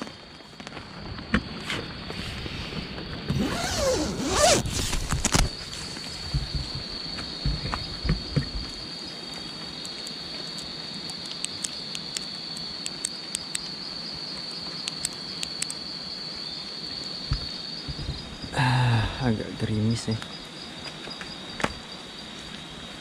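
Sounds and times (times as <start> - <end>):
insects trilling: 0.0 - 23.0
soft thumps: 6.3 - 8.7.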